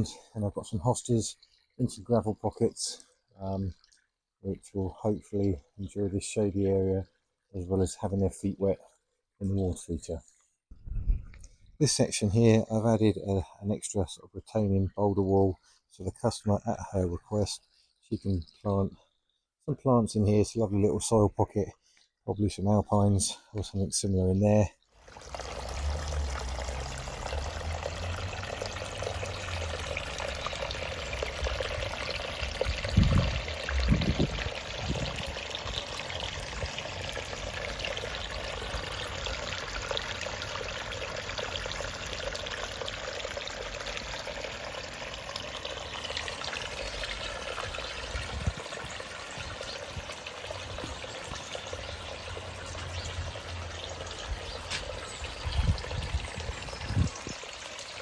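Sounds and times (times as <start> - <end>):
water trickling over rocks: 0.0 - 8.4, 24.5 - 58.0
brief low thumps: 10.7 - 11.4.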